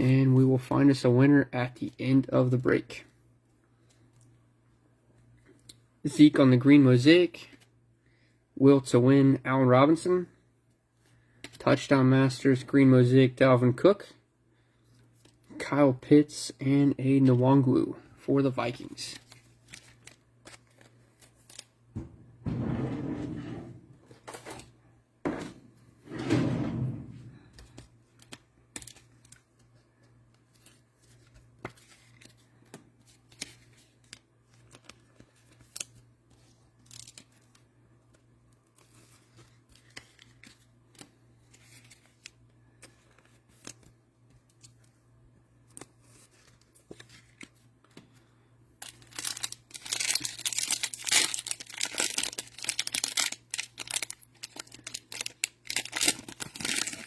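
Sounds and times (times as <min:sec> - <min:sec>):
thump: 0:22.0 - 0:23.4
faint clicks of cards handled: 0:27.5 - 0:48.3
plastic wrapper tearing and crinkling: 0:48.8 - 0:57.0.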